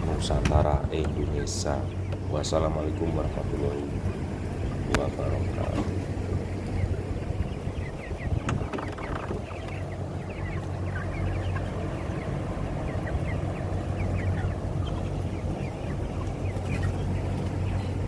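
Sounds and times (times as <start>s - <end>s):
chicks peeping: 0.0s - 18.0s
steady low hum: 0.0s - 18.0s.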